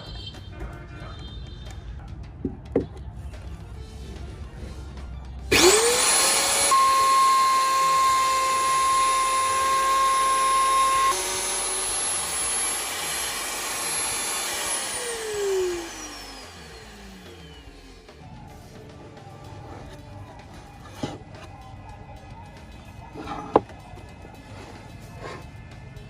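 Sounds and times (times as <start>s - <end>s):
electric motor whining: 5.5s - 18.2s, 23.0s - 23.7s.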